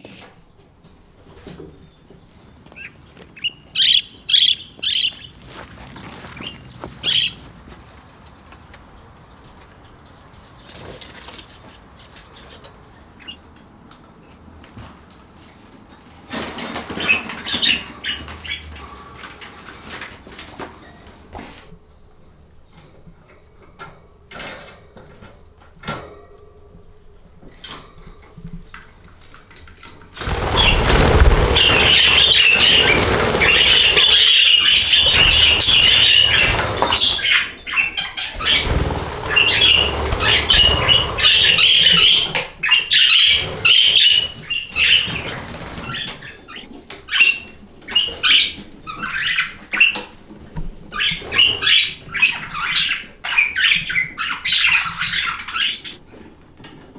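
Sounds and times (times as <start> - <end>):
budgies chirping: 2.7 - 7.6, 30.2 - 47.3, 51.0 - 56.0
wings flapping: 30.1 - 46.4.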